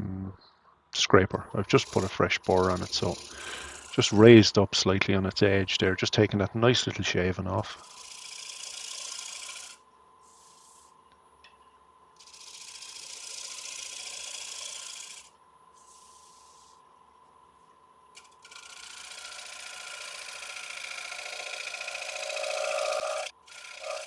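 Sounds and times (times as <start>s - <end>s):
scraper hissing on spinning wood: 1.7s - 4.5s, 7.6s - 11.0s, 12.2s - 16.8s, 18.2s - 24.0s.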